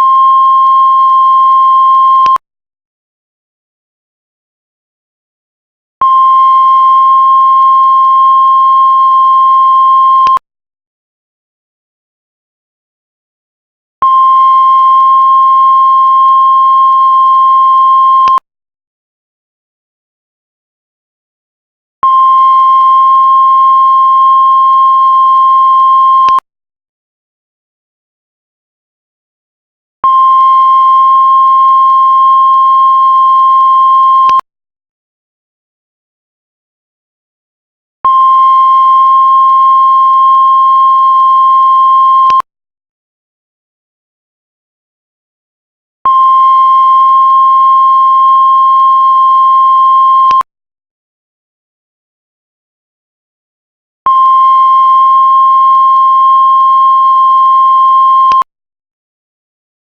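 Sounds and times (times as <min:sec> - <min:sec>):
heart monitor flatline beep: 0:00.0 - 0:02.4, 0:06.0 - 0:10.4, 0:14.0 - 0:18.4, 0:22.0 - 0:26.4, 0:30.0 - 0:34.4, 0:38.1 - 0:42.5, 0:46.1 - 0:50.5, 0:54.1 - 0:58.5.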